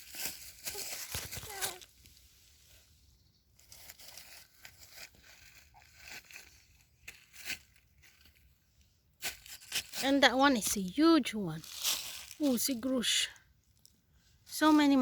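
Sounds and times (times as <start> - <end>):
twigs cracking: 0.0 - 2.2, 11.6 - 13.0
dry leaves and twigs crackling: 0.0 - 15.0.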